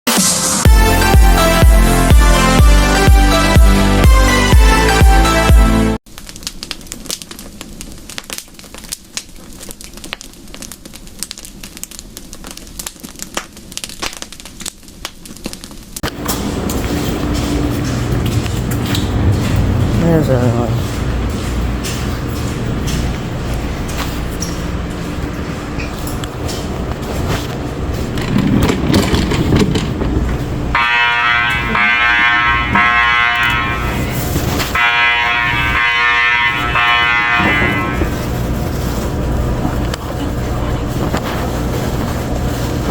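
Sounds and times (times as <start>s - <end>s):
electronic dance music: 0.1s - 6.0s
crackling and clicking: 6.1s - 30.8s
low rumble: 16.1s - 30.8s
fire alarm horn blasts: 30.7s - 38.6s.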